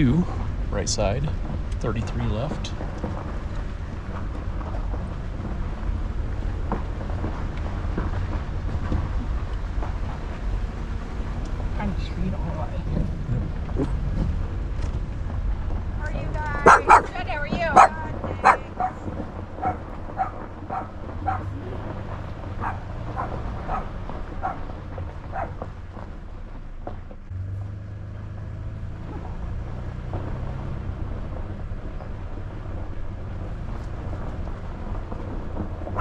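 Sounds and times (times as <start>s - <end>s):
vehicle low hum: 0.0s - 36.0s
dog barking: 16.6s - 19.0s, 19.6s - 21.6s, 22.6s - 24.7s, 25.3s - 25.6s, 29.1s - 29.4s.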